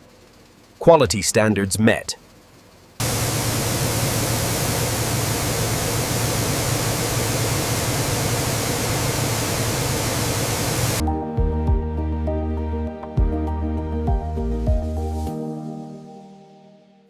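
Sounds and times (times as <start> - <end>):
low hum: 3.0 - 11.0
rushing industrial machine: 3.0 - 11.0.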